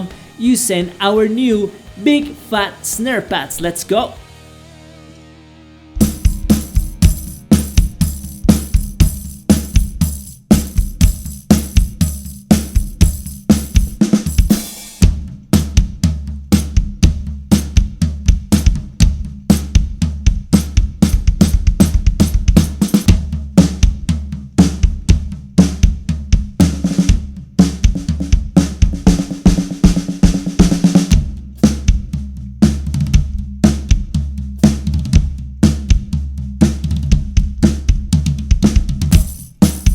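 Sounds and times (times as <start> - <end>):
drum kit groove: 0.0 - 4.8, 5.9 - 39.9
hi-hat and cymbals: 6.0 - 15.7, 20.5 - 23.8, 26.6 - 32.3, 38.6 - 39.9
short fat snare and tom hits: 6.0 - 34.0, 38.5 - 39.9.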